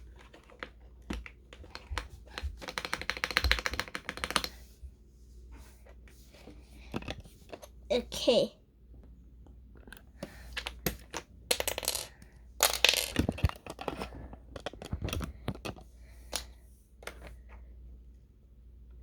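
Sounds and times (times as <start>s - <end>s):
plastic keycaps clicking and clattering: 0.1s - 4.6s, 12.7s - 15.8s.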